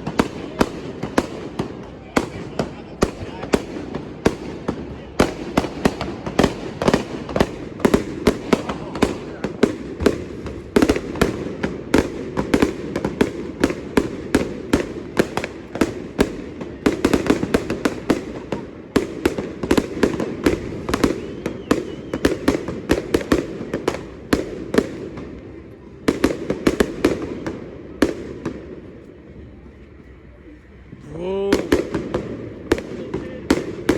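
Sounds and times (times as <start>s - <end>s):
fireworks bangs and crackles: 0.0s - 33.9s.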